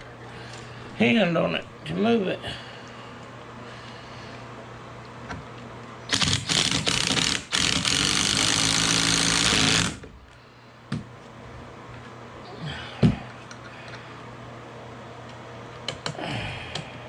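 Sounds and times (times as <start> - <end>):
power driver driving screw: 6.1 - 10.0.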